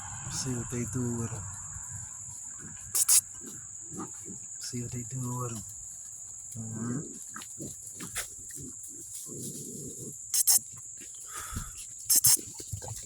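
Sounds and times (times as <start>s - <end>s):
steady high whine: 0.0s - 3.2s
puppies grunting and growling: 0.0s - 5.8s, 6.5s - 10.6s.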